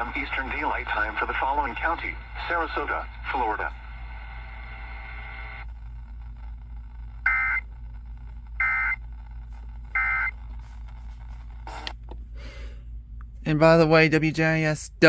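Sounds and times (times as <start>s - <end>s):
harsh digital buzzes: 0.0s - 11.9s
low hum: 0.0s - 15.0s.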